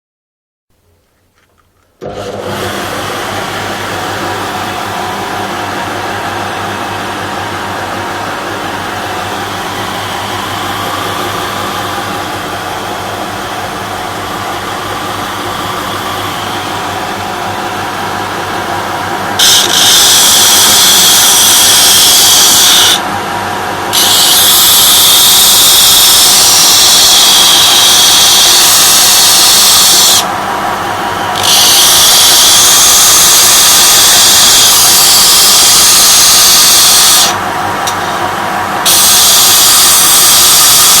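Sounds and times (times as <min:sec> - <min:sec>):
electric motor running: 0:02.0 - 0:41.0
belt grinder grinding hiss: 0:19.3 - 0:23.0, 0:23.9 - 0:30.3, 0:31.3 - 0:38.2, 0:38.8 - 0:41.0.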